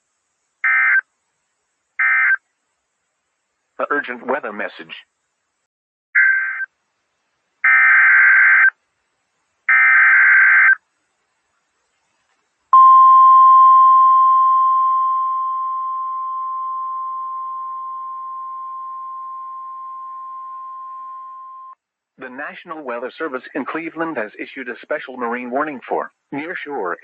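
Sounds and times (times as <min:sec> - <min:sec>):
steady warning alarm tone: 0:12.8 - 0:21.8.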